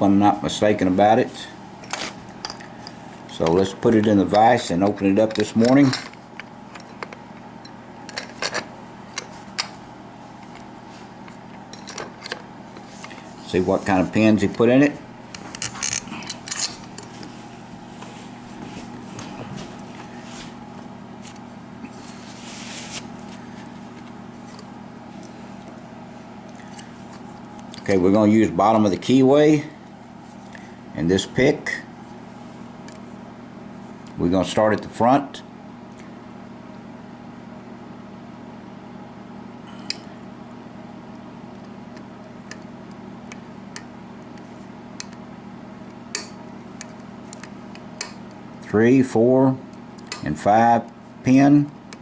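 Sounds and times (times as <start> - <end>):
steady low hum: 0.0 - 52.0
scraping rustle: 21.2 - 23.4.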